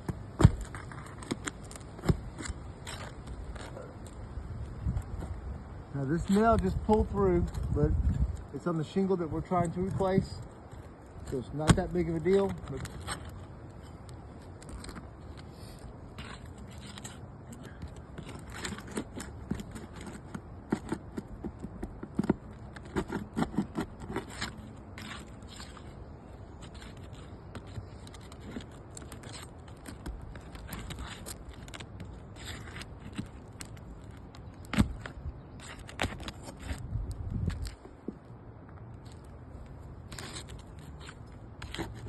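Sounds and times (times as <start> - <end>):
pry tools scraping shingles: 0.0 - 4.2, 6.0 - 37.9, 39.0 - 42.0.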